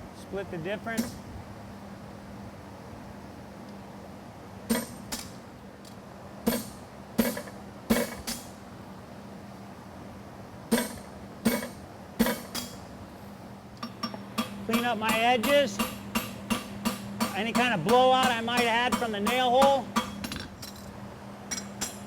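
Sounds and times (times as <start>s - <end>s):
hammer striking punch on anvil: 13.8s - 20.8s.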